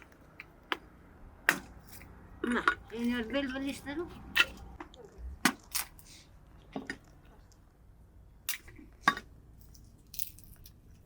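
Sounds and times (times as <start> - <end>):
sharp knocks and cracks: 0.0 - 1.8.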